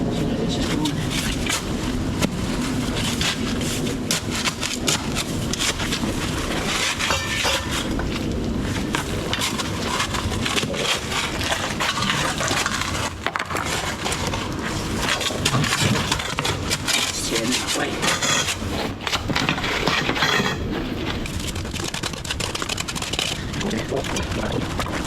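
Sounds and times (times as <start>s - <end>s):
hand tools knocking on rubble: 7.0s - 8.1s.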